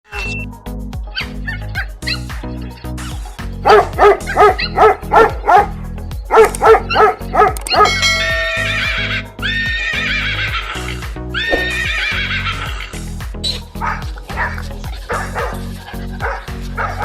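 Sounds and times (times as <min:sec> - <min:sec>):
background music with bass beat: 0:00.1 - 0:17.0
dog barking: 0:03.6 - 0:08.0, 0:13.8 - 0:17.0
horse whinnying: 0:08.4 - 0:13.0.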